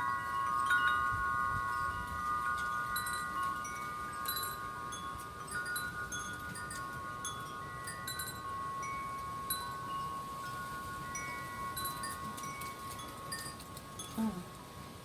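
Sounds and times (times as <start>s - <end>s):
wind chimes ringing: 0.0s - 15.0s
wind hiss: 0.0s - 15.0s.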